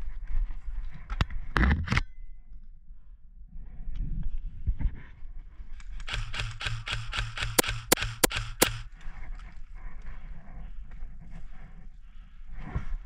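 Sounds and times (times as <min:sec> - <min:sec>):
airsoft gunfire: 0:06.1 - 0:08.9.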